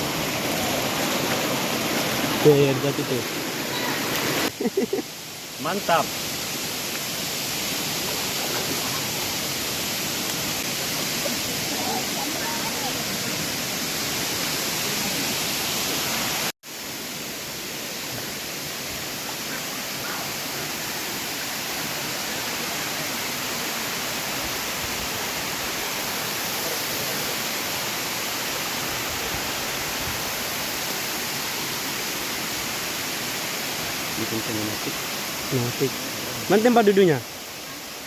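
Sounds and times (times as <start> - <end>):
waterfall rushing: 0.0 - 38.0.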